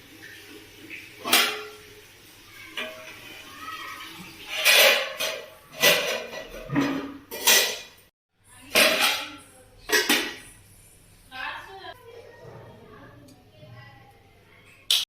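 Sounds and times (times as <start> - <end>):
metal kitchenware clattering: 1.2 - 1.9, 2.7 - 10.6.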